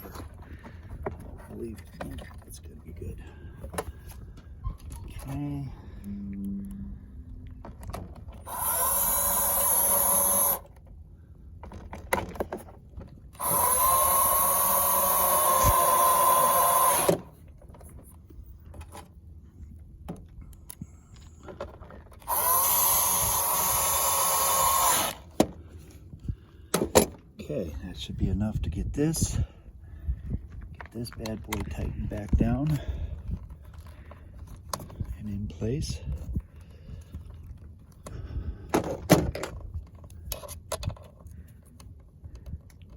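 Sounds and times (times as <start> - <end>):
cordless drill whining: 8.4 - 10.8, 13.4 - 17.4, 22.2 - 25.4.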